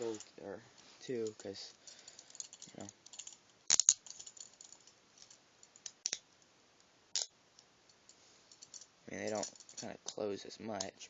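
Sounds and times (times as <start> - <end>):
handcuffs clicking and rattling: 1.2 - 5.9, 8.5 - 10.2.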